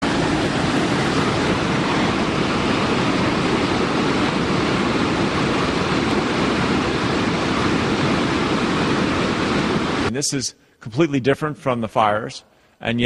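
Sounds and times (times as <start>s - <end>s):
floodwater rushing: 0.0s - 10.2s.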